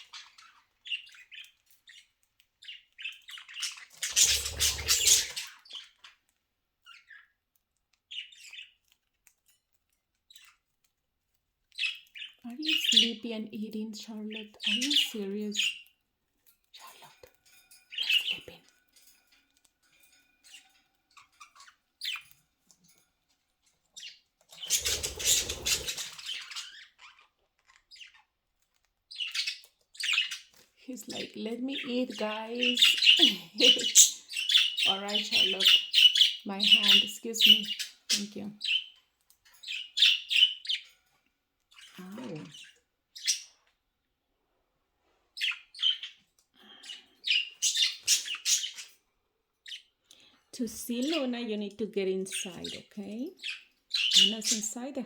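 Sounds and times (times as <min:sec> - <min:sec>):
budgies chirping: 0:00.0 - 0:43.9, 0:45.3 - 0:55.0
wing flapping: 0:24.7 - 0:26.1.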